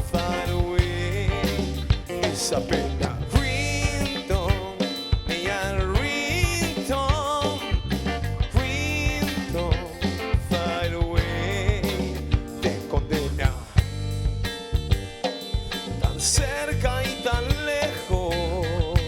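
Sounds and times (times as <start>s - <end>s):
band playing rock song: 0.0s - 19.0s.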